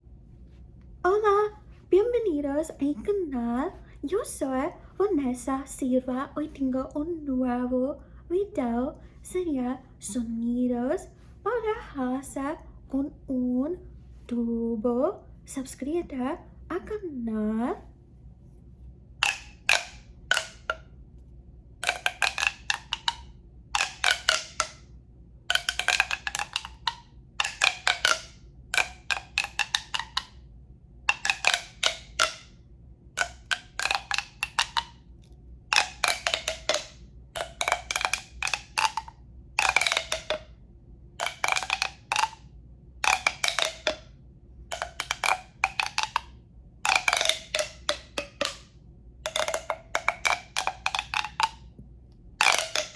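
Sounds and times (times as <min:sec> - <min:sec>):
tube being tapped: 0:19.2 - 0:30.5, 0:31.1 - 0:40.6, 0:41.2 - 0:52.9.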